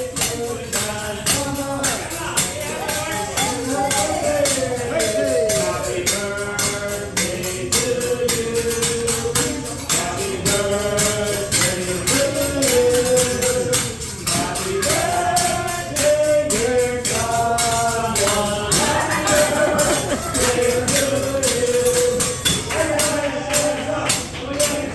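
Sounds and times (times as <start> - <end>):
tambourine or shaker beat: 0.0 - 24.9
person singing: 12.1 - 24.9.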